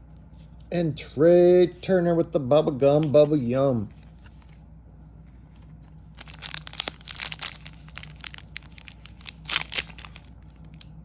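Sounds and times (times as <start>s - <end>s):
foil wrapper crinkling and tearing: 6.1s - 10.9s.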